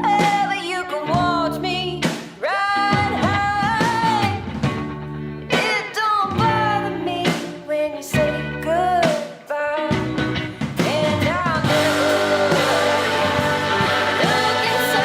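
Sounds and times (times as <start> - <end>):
guitar: 0.0 - 15.0
person singing: 5.5 - 15.0.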